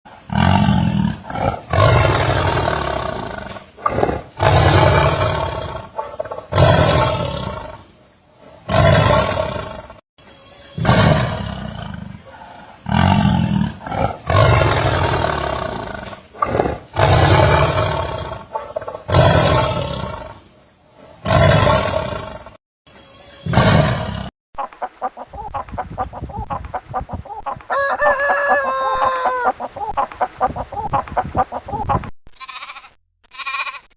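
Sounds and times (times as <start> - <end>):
tiger roaring: 0.2 - 7.8, 8.6 - 9.9, 10.8 - 18.5, 19.1 - 20.4
pitched animal call: 24.9 - 33.9.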